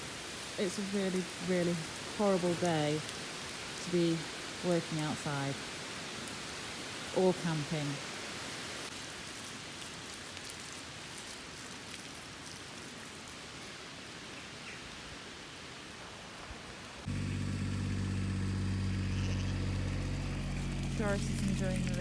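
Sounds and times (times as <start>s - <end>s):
steady rain falling: 0.0s - 22.0s
engine hum: 17.0s - 22.0s.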